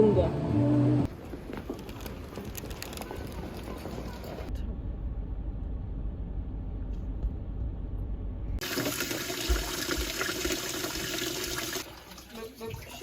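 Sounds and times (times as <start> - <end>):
low background rumble: 4.1 - 8.6
water running from a tap: 8.6 - 13.0.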